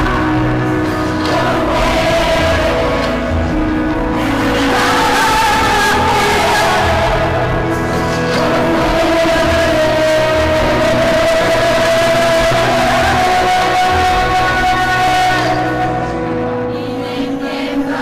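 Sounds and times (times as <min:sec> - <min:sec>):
song with long held note: 0:00.0 - 0:18.0.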